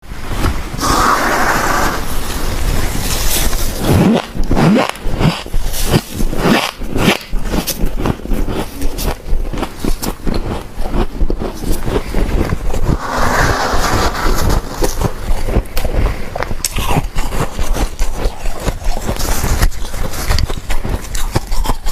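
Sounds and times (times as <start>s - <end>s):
frost chunks crunching: 7.0s - 12.9s.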